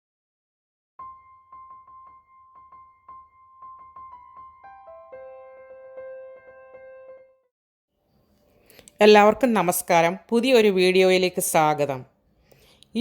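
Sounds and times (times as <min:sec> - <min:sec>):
piano-style keyboard music: 0:01.0 - 0:07.5.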